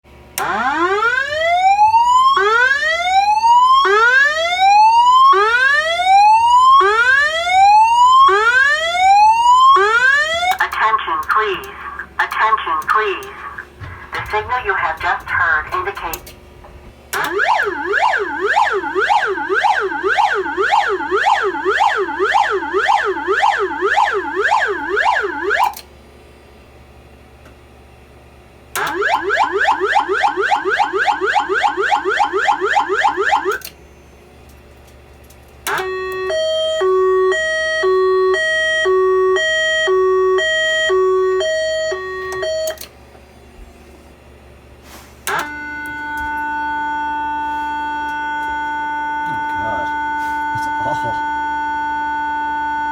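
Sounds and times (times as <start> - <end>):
fire alarm siren sweeps: 0.4 - 10.6, 17.1 - 25.8, 28.8 - 34.3, 35.7 - 42.9, 45.3 - 52.9
steady alarm tone: 0.4 - 11.6, 17.1 - 25.8, 28.8 - 33.7, 35.7 - 42.9, 45.3 - 52.9
two-tone alarm pattern: 0.4 - 11.7, 17.2 - 25.8, 28.8 - 33.7, 35.7 - 42.9, 45.3 - 52.9.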